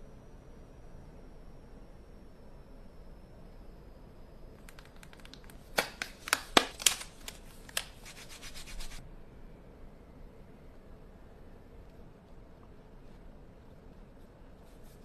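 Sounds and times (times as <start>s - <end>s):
hands handling packaging: 4.6s - 9.0s.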